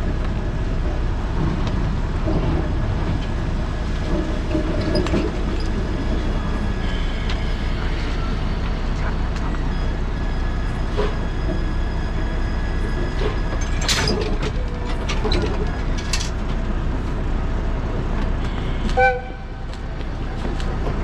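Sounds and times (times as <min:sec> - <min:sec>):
train rumbling: 0:00.0 - 0:21.0
wheel clicks and squeals: 0:04.5 - 0:16.5
train horn toot: 0:18.4 - 0:19.7.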